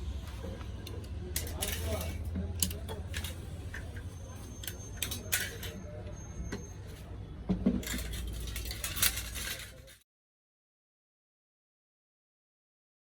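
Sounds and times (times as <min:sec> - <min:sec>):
small hard objects clinking: 0:07.8 - 0:10.0.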